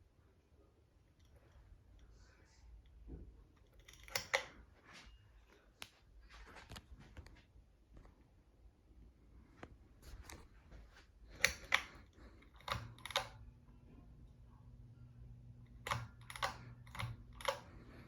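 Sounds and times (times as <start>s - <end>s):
faint low hum: 0.0s - 18.0s
fan switch clicking: 12.5s - 13.4s, 15.7s - 17.8s.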